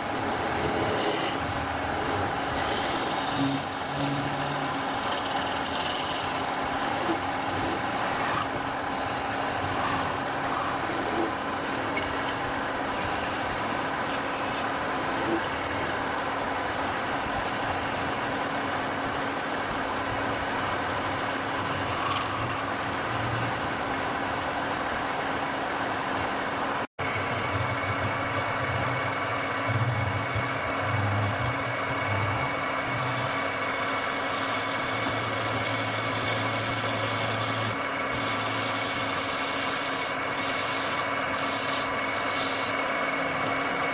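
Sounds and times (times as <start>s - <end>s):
wood lathe motor hum: 0.0s - 16.2s, 17.5s - 25.6s, 26.6s - 43.9s
turning tool scraping wood: 2.6s - 8.5s, 32.9s - 42.8s.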